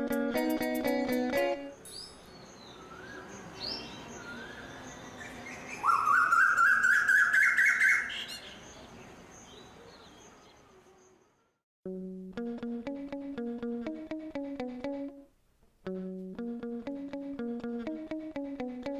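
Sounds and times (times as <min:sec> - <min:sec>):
songbird singing: 0:01.7 - 0:11.5.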